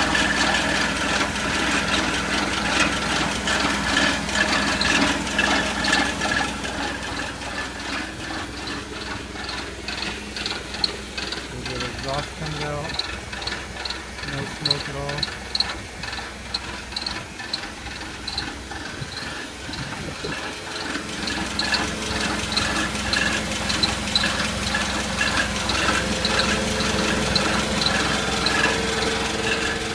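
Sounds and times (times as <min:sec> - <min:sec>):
forklift engine idling: 0:00.0 - 0:29.9
light ticking: 0:04.4 - 0:29.9.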